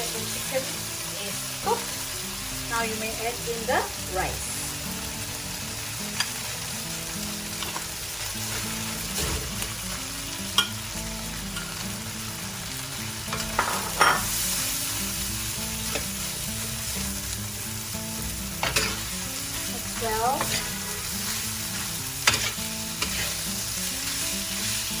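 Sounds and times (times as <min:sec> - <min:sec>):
food sizzling in a wok: 0:00.0 - 0:25.0
utensil scraping and knocking wok: 0:13.2 - 0:14.6, 0:15.4 - 0:17.6, 0:18.2 - 0:25.0.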